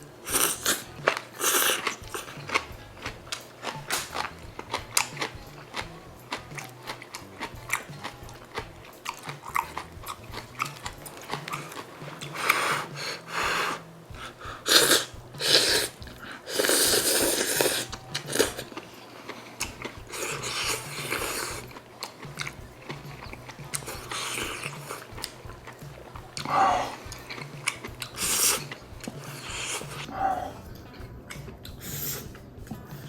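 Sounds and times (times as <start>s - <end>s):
person chewing food: 0.0s - 33.0s.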